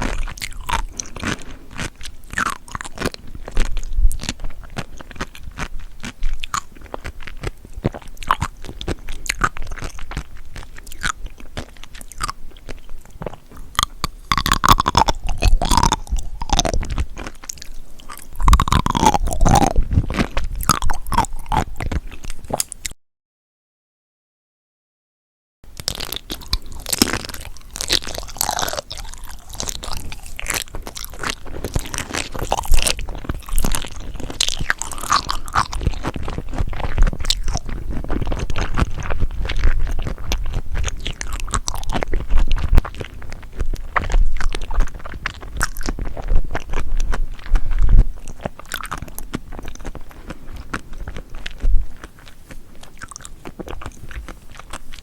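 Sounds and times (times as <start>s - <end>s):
person chewing crunchy food: 0.0s - 23.0s, 25.7s - 55.0s.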